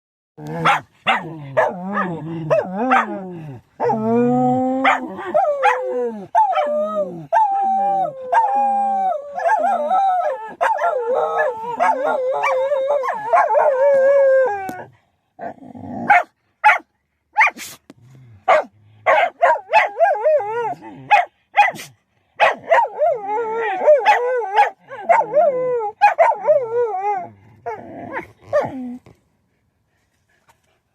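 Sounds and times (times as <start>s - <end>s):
dog howling: 1.6s - 14.9s
dog sneezing and yipping: 17.4s - 17.8s, 21.1s - 22.6s.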